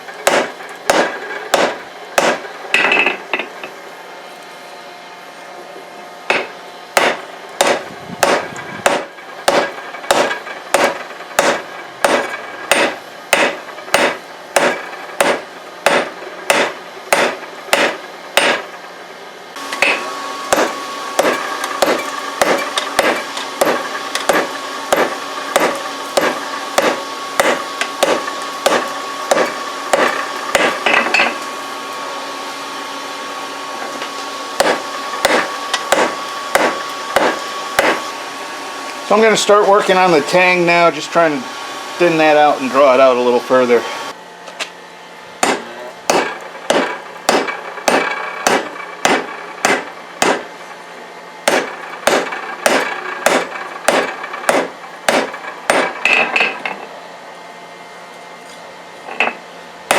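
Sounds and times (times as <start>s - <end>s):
steady background hum: 0.0s - 59.9s
hammer striking steel on anvil: 0.2s - 3.5s, 6.3s - 18.7s, 19.7s - 31.4s, 34.6s - 38.1s, 45.4s - 50.5s, 51.5s - 56.8s.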